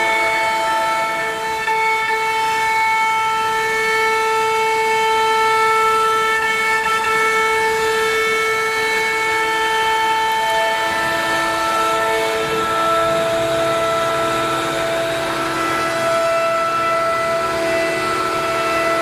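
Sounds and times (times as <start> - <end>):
router spindle high-pitched whine: 0.0 - 19.0
lower pitch whine: 6.4 - 19.0.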